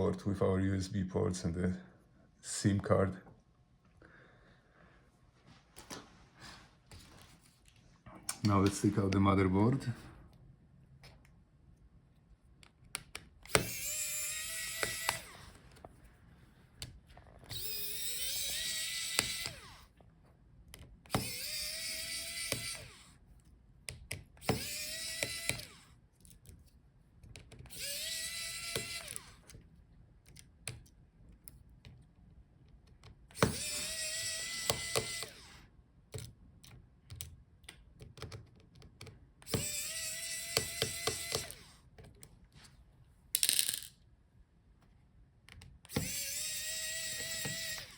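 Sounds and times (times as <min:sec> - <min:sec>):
electric screwdriver whirring: 0:13.1 - 0:15.8, 0:17.4 - 0:20.0, 0:21.0 - 0:23.2, 0:24.3 - 0:26.0, 0:27.6 - 0:29.6, 0:33.3 - 0:35.6, 0:39.4 - 0:41.9, 0:45.8 - 0:47.9.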